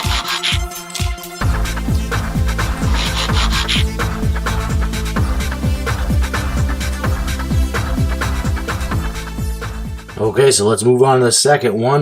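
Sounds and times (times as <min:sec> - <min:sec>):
electronic dance music: 0:00.0 - 0:10.3
deep kick drums: 0:01.4 - 0:03.0
sustained bass: 0:01.4 - 0:10.5.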